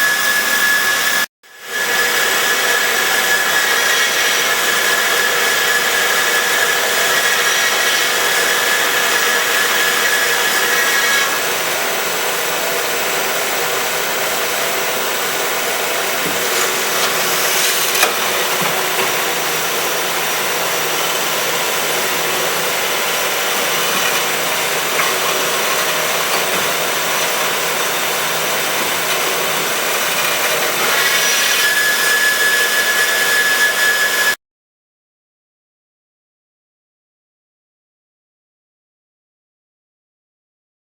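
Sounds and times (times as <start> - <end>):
band saw cutting metal: 0.0 - 34.4
high whine: 4.6 - 34.4.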